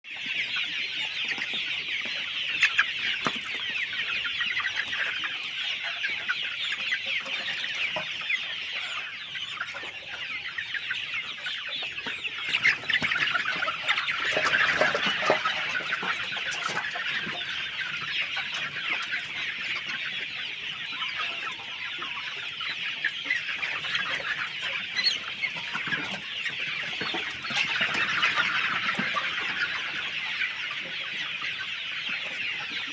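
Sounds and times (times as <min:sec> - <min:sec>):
chickens clucking: 0:00.1 - 0:32.9.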